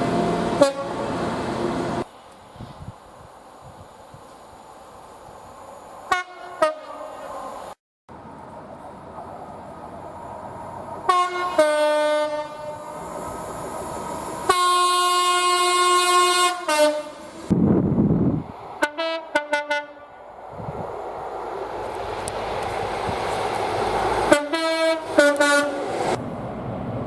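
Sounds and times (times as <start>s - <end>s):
approaching train noise: 0.0s - 27.0s
train air horn blasts: 0.6s - 1.0s, 6.1s - 7.3s, 11.1s - 13.0s, 14.4s - 17.3s, 18.8s - 20.2s, 24.3s - 25.9s.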